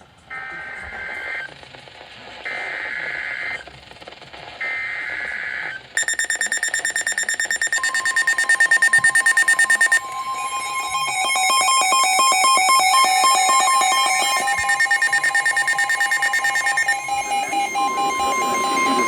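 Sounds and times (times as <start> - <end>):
buzzy electronic data squawks: 6.0 - 19.0
pulsing electronic alert tone: 6.0 - 19.0.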